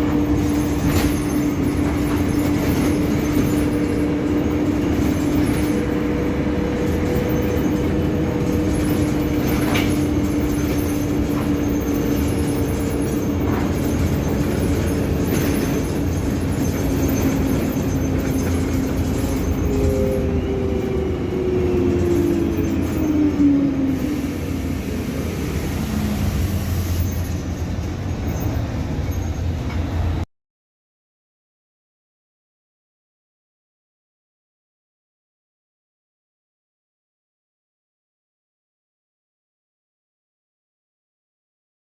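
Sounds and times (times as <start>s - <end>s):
bus diesel engine droning: 0.0s - 30.3s.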